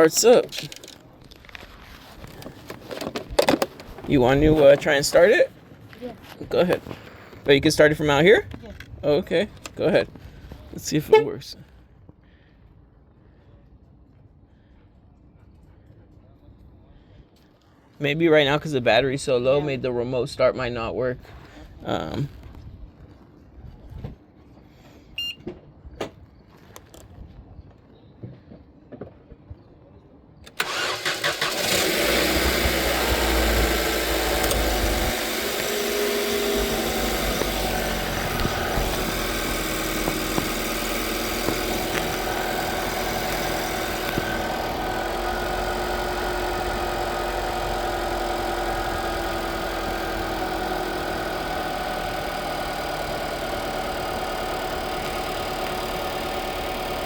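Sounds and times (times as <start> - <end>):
car engine starting and idling: 0.0 - 5.5, 30.5 - 57.0.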